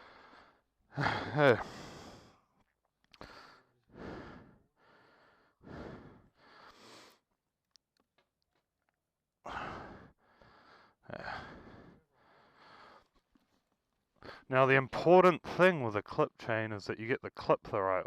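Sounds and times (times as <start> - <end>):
person breathing out heavily: 0.0 - 2.5, 3.2 - 7.2, 9.5 - 13.1.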